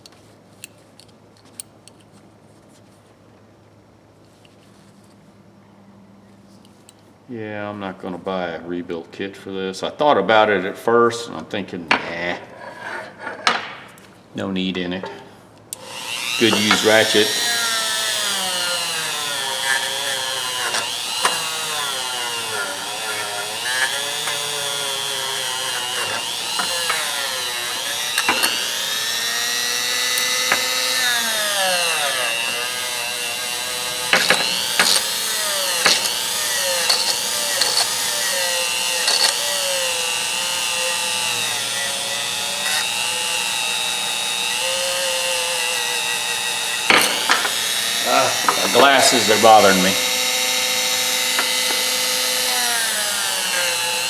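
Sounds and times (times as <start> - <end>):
power tool motor whine: 15.8 - 54.0.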